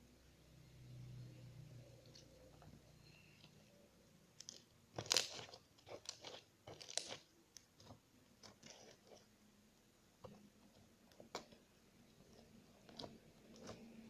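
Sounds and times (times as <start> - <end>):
slime squeezed crackling and popping: 4.4 - 7.2.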